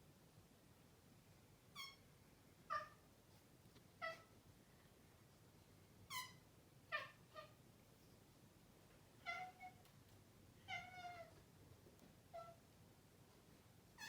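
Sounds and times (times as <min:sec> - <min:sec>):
cat chirping: 0:01.7 - 0:02.0, 0:06.1 - 0:07.6, 0:09.2 - 0:09.8.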